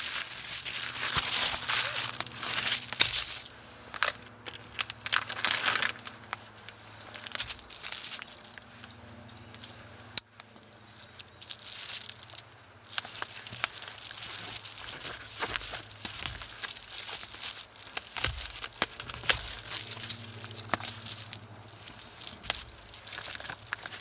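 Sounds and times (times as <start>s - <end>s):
crinkling and rustling: 0.0s - 24.0s.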